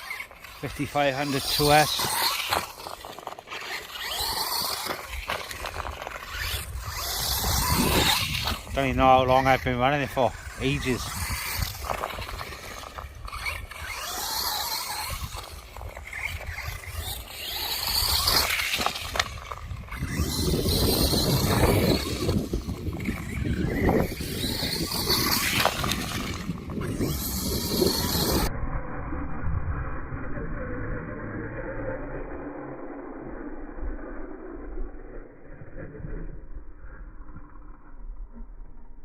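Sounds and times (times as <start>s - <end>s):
rc truck motor whining: 0.0s - 38.1s
wind buffeting microphone: 3.9s - 30.2s.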